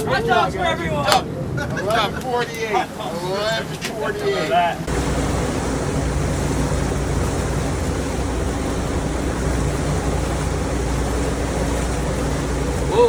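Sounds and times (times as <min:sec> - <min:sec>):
water noise: 0:00.0 - 0:13.0
boat engine running: 0:04.8 - 0:13.0
wind noise: 0:04.8 - 0:13.0.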